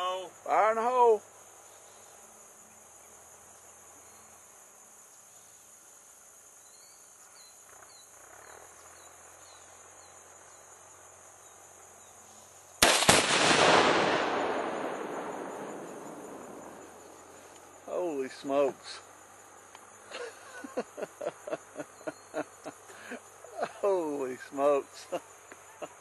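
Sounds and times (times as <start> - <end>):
crickets chirring: 0.0 - 26.0
explosion rolling away: 12.8 - 17.0
rifle shot crack: 12.8 - 17.2.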